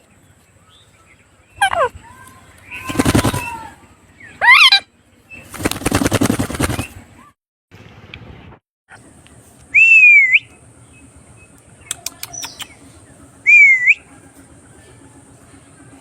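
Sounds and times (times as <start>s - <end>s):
harsh raspy parrot noise: 1.6s - 2.0s.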